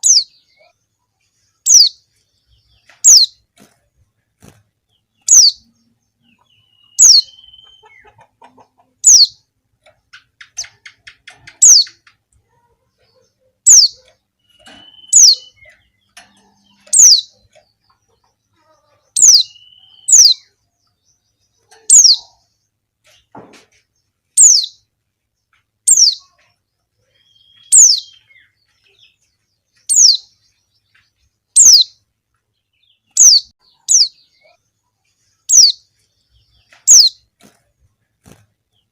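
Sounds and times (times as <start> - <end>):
bird high downward-slurred call: 6.7 - 7.9, 19.2 - 20.4
faint rapid bird twitter: 10.1 - 38.9.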